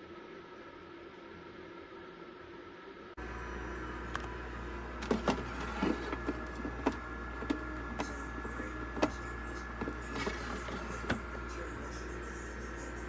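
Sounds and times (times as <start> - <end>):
dehumidifier fan humming: 0.0 - 13.0.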